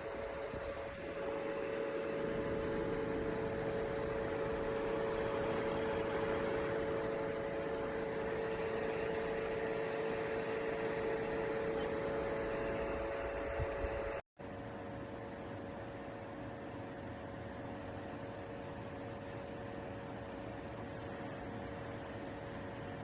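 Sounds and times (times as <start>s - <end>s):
motor hum: 0.0s - 14.2s
rush of fan air: 0.0s - 23.0s.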